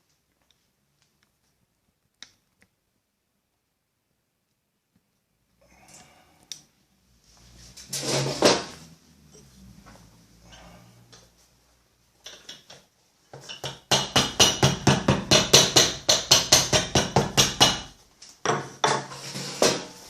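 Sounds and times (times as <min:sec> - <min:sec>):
hammer tapping on anvil: 0:13.5 - 0:17.9.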